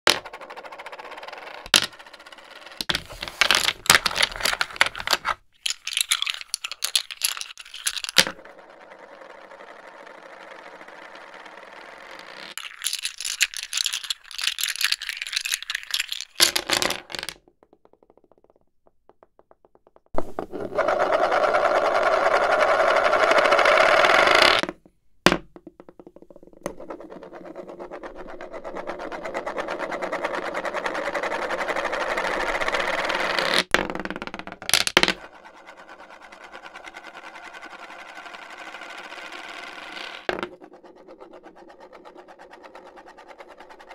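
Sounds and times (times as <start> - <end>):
checker sliding across board: 37.9 - 40.4.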